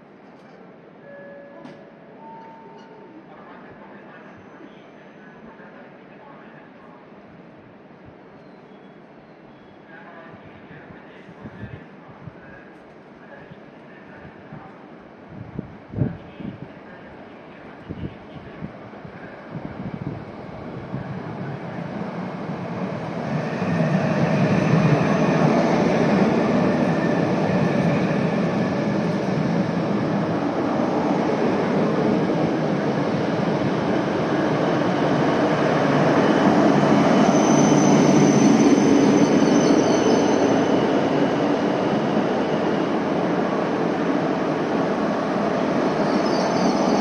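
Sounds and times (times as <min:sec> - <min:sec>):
train running and wheel noise: 0:00.0 - 0:47.0
high brake squeal: 0:08.4 - 0:09.8, 0:37.1 - 0:40.8, 0:46.0 - 0:47.0.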